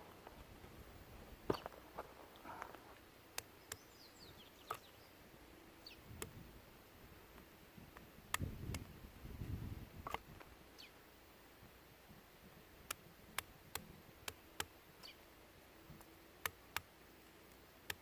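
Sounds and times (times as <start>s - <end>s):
sharp cracks and snaps: 1.5s - 3.9s, 10.0s - 10.5s, 12.8s - 15.1s, 16.0s - 18.0s.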